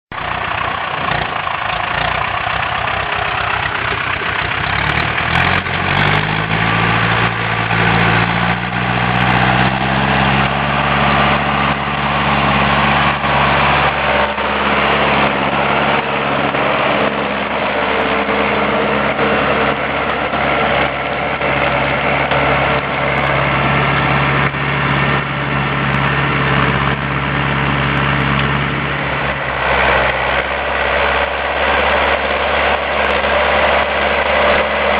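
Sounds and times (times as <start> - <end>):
tractor diesel engine running: 0.1 - 34.9.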